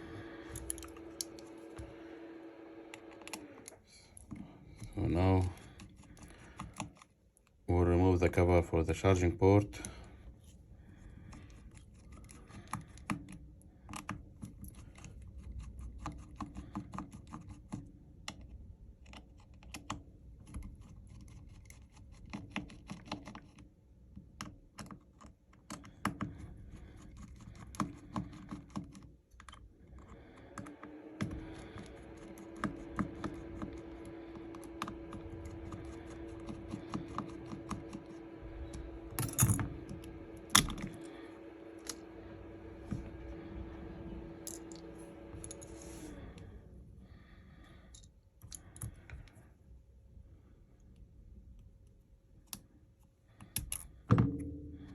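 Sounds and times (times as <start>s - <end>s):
low steady hum: 0.0s - 15.6s, 29.3s - 54.9s
small tools clicking on phone: 5.6s - 7.5s, 11.3s - 23.7s.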